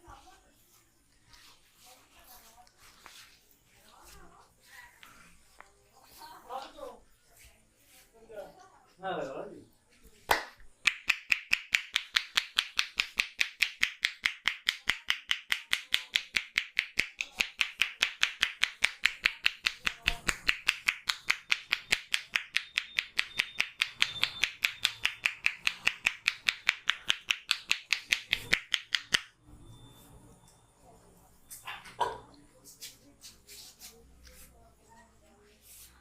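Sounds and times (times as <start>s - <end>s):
hands clapping on head: 10.2s - 29.3s.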